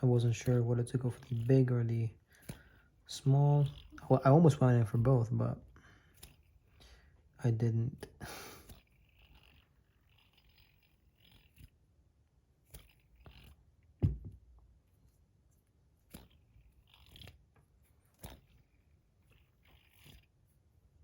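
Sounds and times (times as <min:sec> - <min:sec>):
heavy knock: 0:14.0 - 0:14.4.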